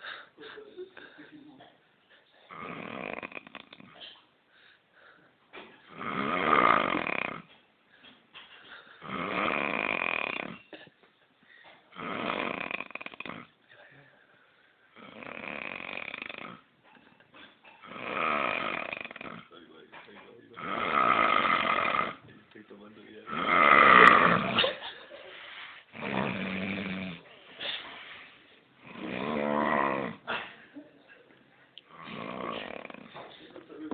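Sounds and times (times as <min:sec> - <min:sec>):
man snoring loudly: 0:02.5 - 0:03.9, 0:05.9 - 0:07.5, 0:09.0 - 0:10.6, 0:12.0 - 0:13.5, 0:15.0 - 0:16.6, 0:17.8 - 0:19.5, 0:20.6 - 0:22.2, 0:23.3 - 0:24.6, 0:25.9 - 0:27.2, 0:28.8 - 0:30.3, 0:31.9 - 0:33.2.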